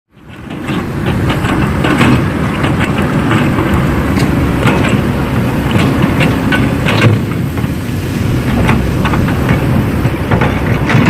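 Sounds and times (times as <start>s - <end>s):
model excavator engine rumble: 0.1s - 11.0s
clicks and clatter: 0.2s - 5.0s, 8.5s - 11.0s.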